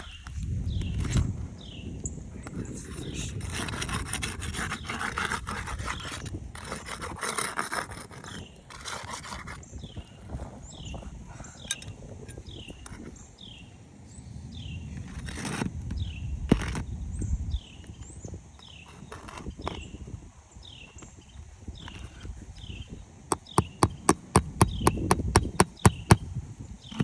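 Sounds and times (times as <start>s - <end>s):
bird chirping: 0.0s - 3.3s, 9.6s - 15.0s, 15.9s - 27.0s
hand tool scraping shingles: 3.0s - 9.7s, 18.6s - 19.8s, 23.3s - 26.2s.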